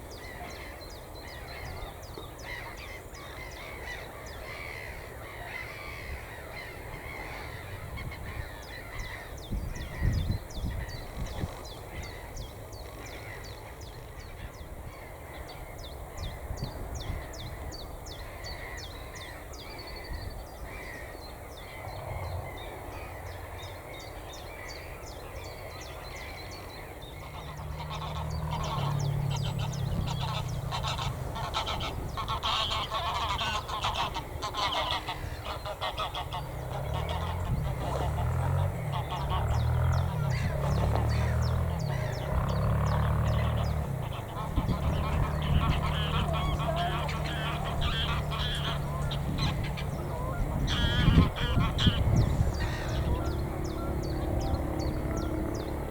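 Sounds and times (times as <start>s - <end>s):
geese honking: 26.8s - 55.9s.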